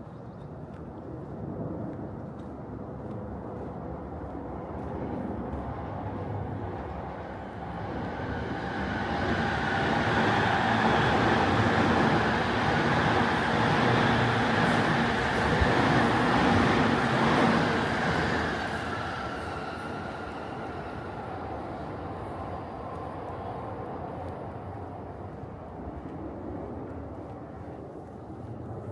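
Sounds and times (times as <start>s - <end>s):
train rumbling past: 4.5s - 24.0s.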